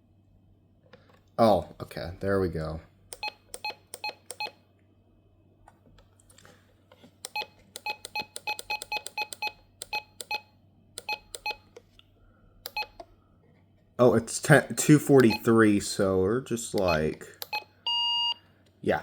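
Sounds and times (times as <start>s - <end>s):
electronic key beeps: 7.3s - 11.6s, 15.2s - 15.5s, 16.8s - 18.4s.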